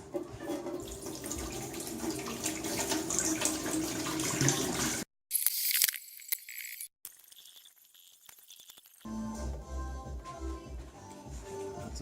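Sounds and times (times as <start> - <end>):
water running from faucet into sink: 0.4 - 5.1, 7.1 - 9.1.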